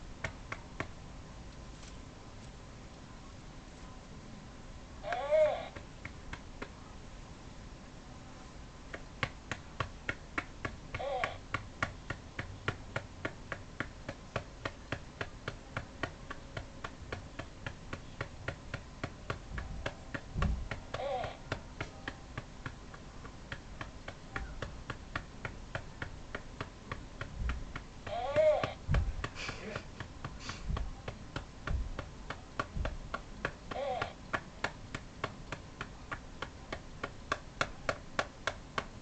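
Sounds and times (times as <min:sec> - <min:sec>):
hand patting hard plastic: 0:00.2 - 0:01.0, 0:05.1 - 0:06.8, 0:08.9 - 0:39.0.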